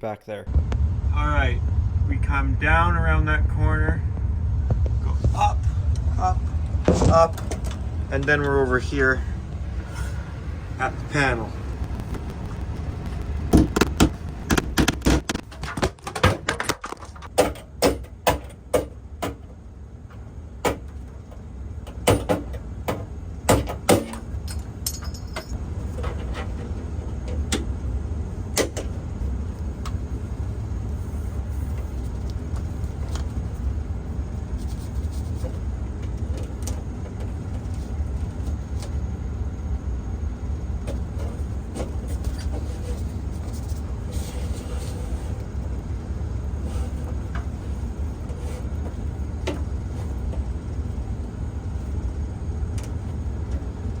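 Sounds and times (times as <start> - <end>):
steady low hum: 0.0 - 54.0
clicks and knocks on cable: 11.8 - 18.5.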